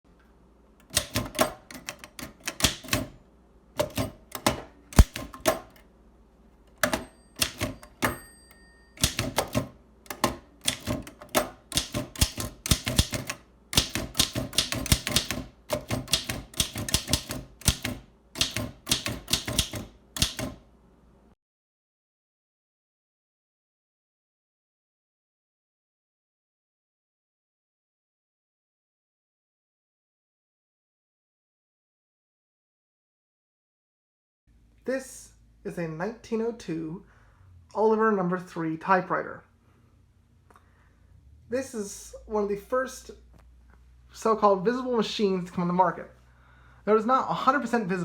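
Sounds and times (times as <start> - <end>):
typewriter keystrokes: 0.8 - 3.2, 3.8 - 5.8, 6.8 - 8.2, 9.0 - 20.6
typewriter bell ringing: 6.8 - 9.8.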